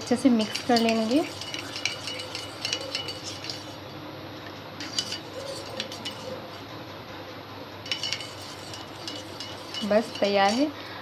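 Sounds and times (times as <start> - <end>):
spoon clinking in a cup: 0.0 - 3.8, 4.8 - 6.6, 7.8 - 10.8.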